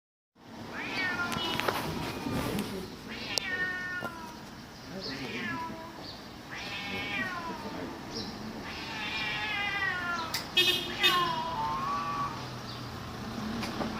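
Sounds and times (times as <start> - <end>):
cats yowling: 0.7 - 1.5, 3.1 - 4.4, 5.1 - 7.9, 8.5 - 12.5.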